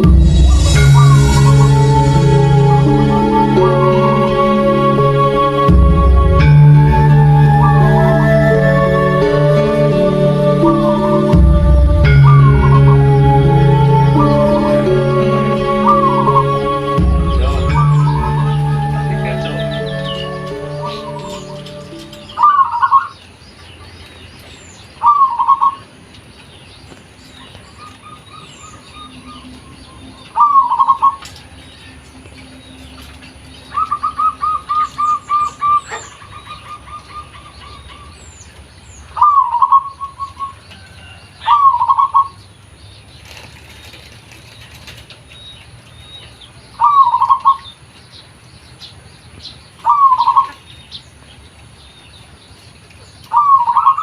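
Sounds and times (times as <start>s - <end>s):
small birds chirping: 0.0s - 54.0s
dove cooing: 53.3s - 54.0s.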